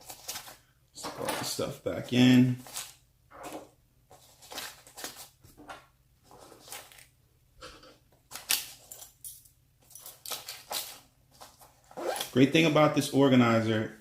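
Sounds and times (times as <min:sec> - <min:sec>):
small items clicking and clinking: 0:08.3 - 0:11.6.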